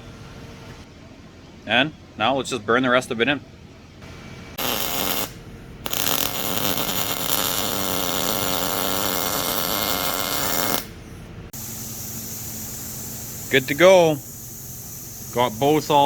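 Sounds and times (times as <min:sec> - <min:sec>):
brazing torch hissing crackle: 0:04.6 - 0:16.0.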